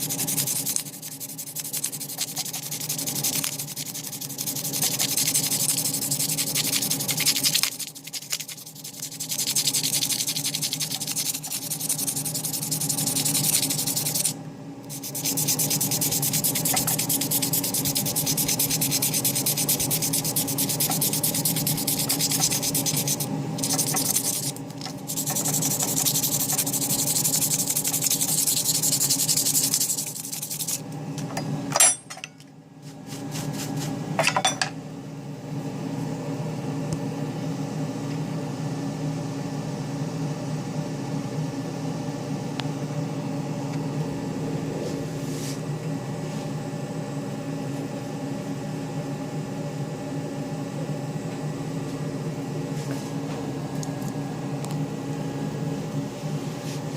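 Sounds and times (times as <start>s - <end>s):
cutter scraping hiss: 0.0s - 30.8s.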